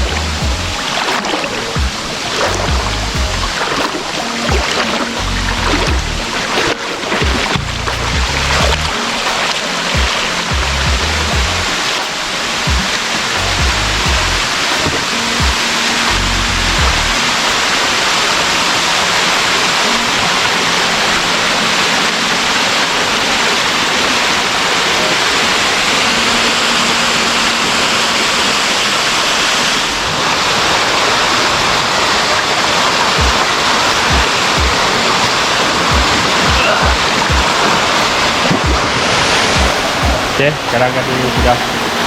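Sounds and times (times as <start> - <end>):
low thumps: 0.0 - 1.2, 1.8 - 9.0, 10.0 - 11.8, 12.7 - 17.2
waterfall rushing: 0.0 - 42.0.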